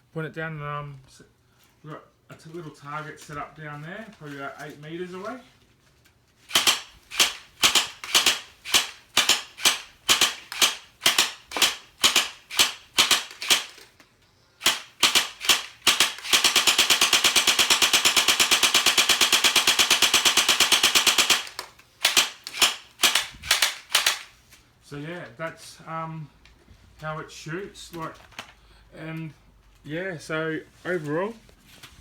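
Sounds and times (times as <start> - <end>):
toy blaster firing: 6.5 - 13.9, 14.6 - 24.3.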